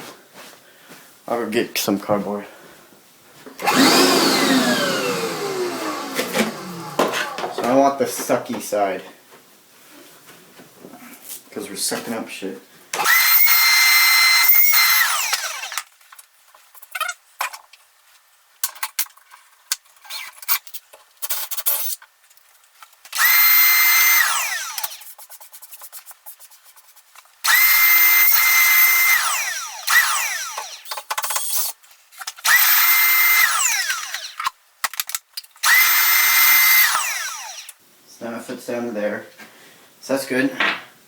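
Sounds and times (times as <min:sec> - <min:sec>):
handheld vacuum whining: 0:03.6 - 0:07.8, 0:13.0 - 0:15.8, 0:23.2 - 0:25.0, 0:27.5 - 0:30.9, 0:32.5 - 0:34.4, 0:35.6 - 0:37.8.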